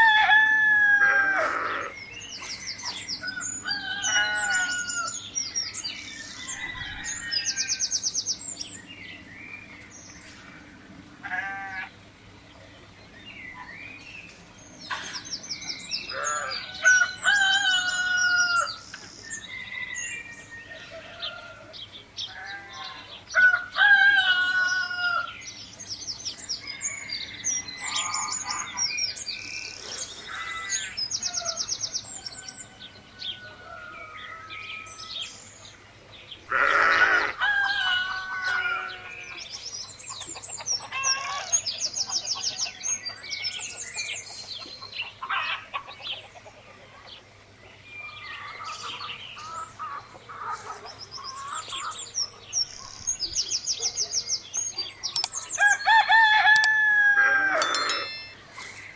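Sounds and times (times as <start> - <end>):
rooster calling: 0.0 - 2.0, 3.6 - 5.1, 36.5 - 39.3, 55.6 - 58.8
chickens calling: 0.0 - 5.4, 6.3 - 8.0, 26.6 - 58.9
small birds chirping and trilling: 0.0 - 58.9.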